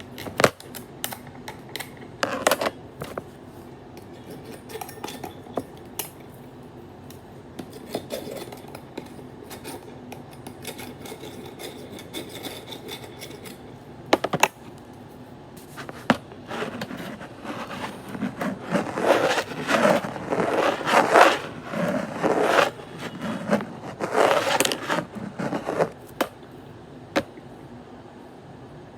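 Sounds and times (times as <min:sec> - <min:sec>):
repeated scraping strokes: 0:15.6 - 0:26.1.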